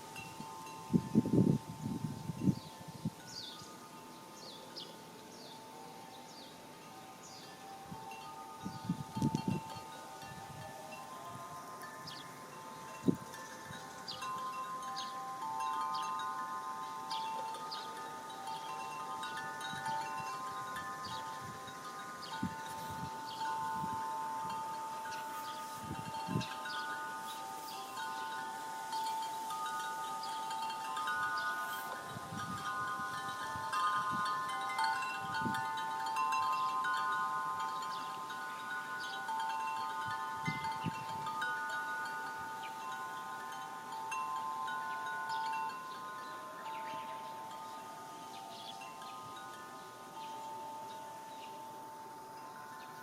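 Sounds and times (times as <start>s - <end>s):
wind chime ringing: 0.0s - 53.0s.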